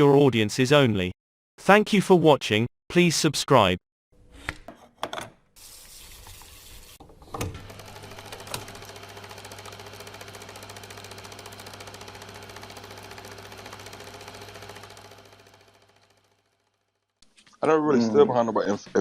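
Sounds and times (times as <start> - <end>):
fast mechanical rattle: 7.4 - 17.1.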